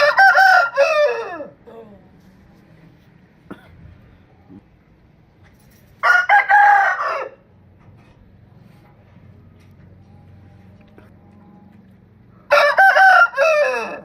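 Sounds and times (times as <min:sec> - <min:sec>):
rooster crowing: 0:00.0 - 0:01.6, 0:06.0 - 0:07.6, 0:12.4 - 0:14.0.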